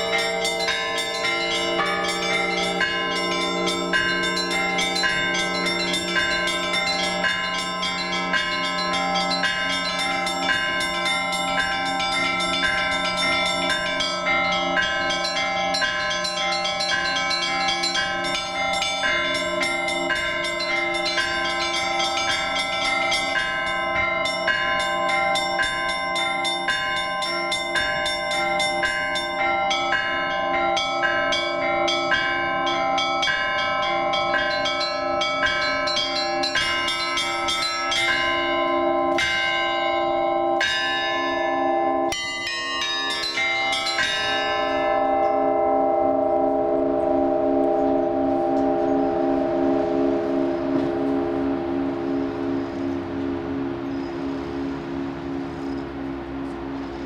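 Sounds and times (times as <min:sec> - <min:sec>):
hum of large bells: 0:00.0 - 0:57.0
small church bells ringing: 0:00.0 - 0:57.0.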